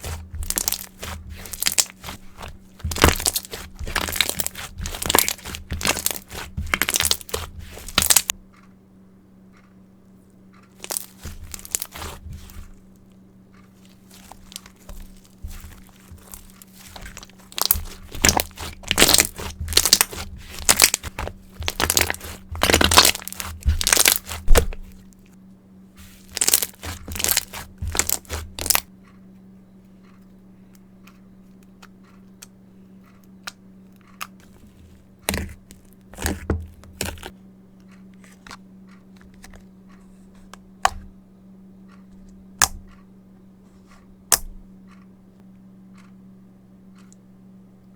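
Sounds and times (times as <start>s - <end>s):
slime clicking and crackling: 0.0s - 8.3s, 10.8s - 12.7s, 13.8s - 25.0s, 26.0s - 28.9s, 35.3s - 37.3s
steady low hum: 0.0s - 47.9s.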